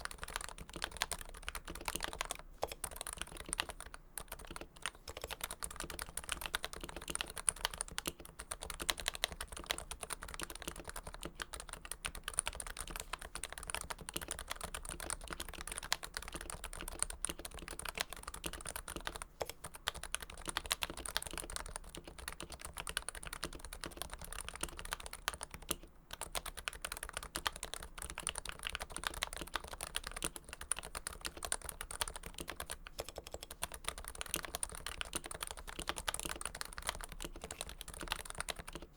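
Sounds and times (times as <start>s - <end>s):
keyboard typing: 0.0s - 38.9s.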